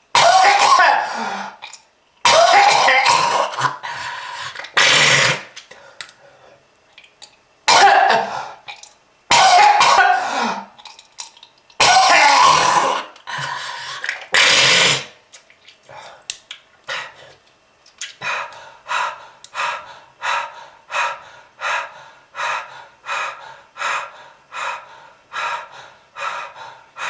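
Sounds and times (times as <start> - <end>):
person coughing harshly: 0.1 - 1.6, 2.2 - 3.8, 7.7 - 8.6, 9.3 - 10.7, 11.8 - 13.2.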